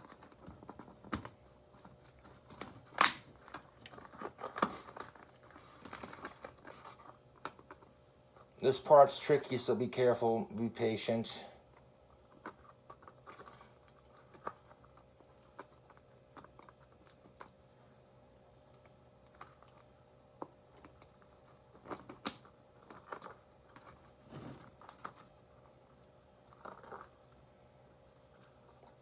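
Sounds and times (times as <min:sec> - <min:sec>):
balloon rubbery rustling: 0:22.8 - 0:25.4.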